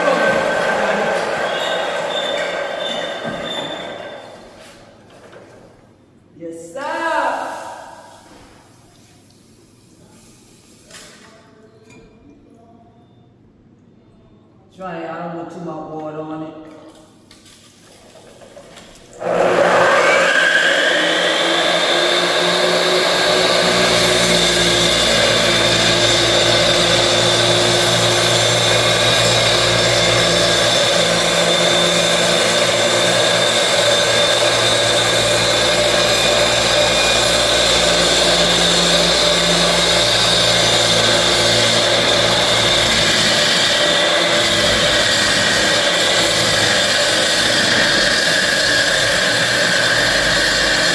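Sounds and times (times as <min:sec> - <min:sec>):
electric saw motor whining: 0:00.0 - 0:04.5, 0:19.2 - 0:50.9.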